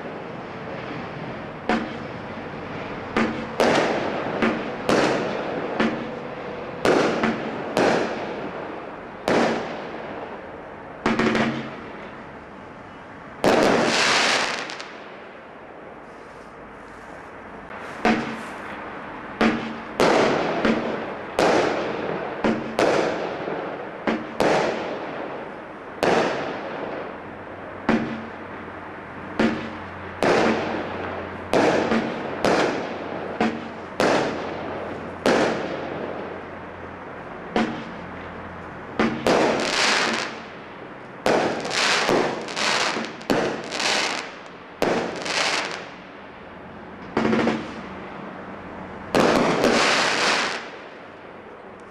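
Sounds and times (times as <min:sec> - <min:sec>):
fireworks banging: 0:01.6 - 0:10.4, 0:11.0 - 0:12.1, 0:13.4 - 0:15.2, 0:17.7 - 0:18.8, 0:19.4 - 0:27.2, 0:27.8 - 0:28.6, 0:29.4 - 0:36.6, 0:37.4 - 0:38.3, 0:39.0 - 0:46.1, 0:46.9 - 0:47.9, 0:49.1 - 0:51.1.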